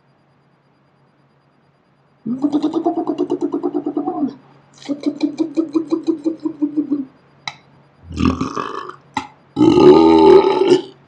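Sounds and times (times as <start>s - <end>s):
man burping: 8.1s - 11.0s.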